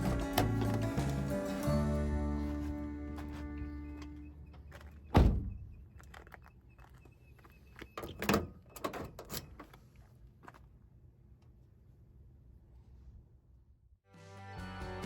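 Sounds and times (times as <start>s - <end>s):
heavy thump: 5.2s - 5.7s.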